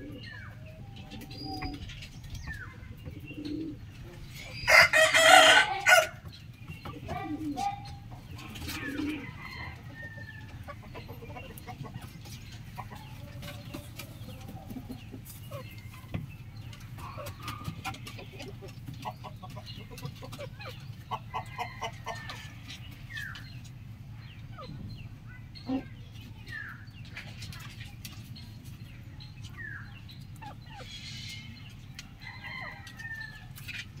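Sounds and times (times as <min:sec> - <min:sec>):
chickens clucking: 0:00.0 - 0:34.0
rooster crowing: 0:04.7 - 0:06.2.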